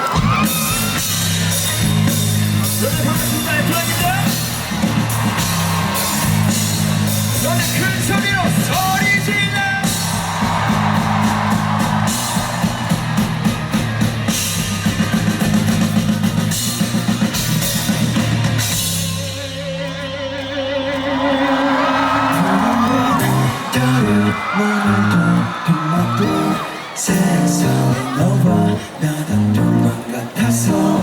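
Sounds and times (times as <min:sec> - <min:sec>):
drum kit with cymbals: 0:00.0 - 0:19.9
bass line: 0:00.2 - 0:28.8, 0:29.4 - 0:30.0.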